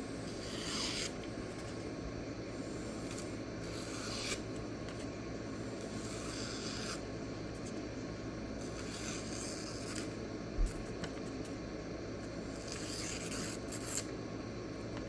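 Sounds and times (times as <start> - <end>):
steady low hum: 0.0 - 15.0
knife blade scraping on stone: 0.2 - 1.2, 2.8 - 4.5, 5.8 - 7.0, 8.6 - 10.1, 12.6 - 14.1.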